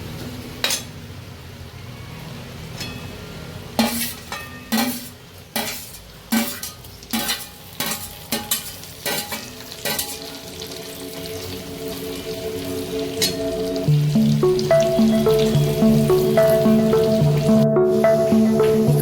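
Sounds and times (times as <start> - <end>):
spoon scraping metal pan: 3.8 - 10.3
food sizzling in a pan: 3.8 - 19.0.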